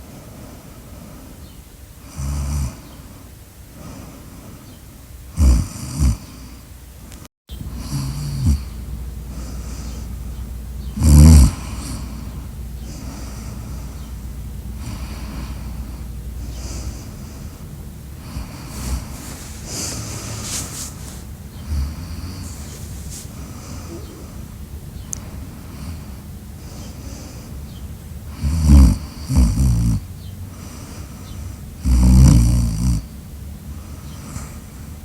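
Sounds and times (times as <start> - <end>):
loud snoring: 2.1 - 2.8, 5.4 - 6.4, 7.6 - 10.2, 10.8 - 24.4, 28.3 - 30.1, 31.8 - 33.1.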